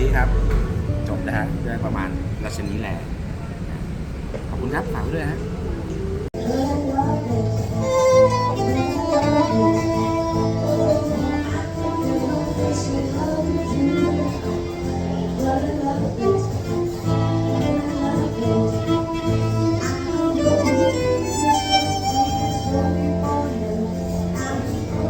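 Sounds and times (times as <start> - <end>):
backing track with bass notes: 0.0 - 2.4, 6.4 - 25.0
violin melody: 6.9 - 25.0.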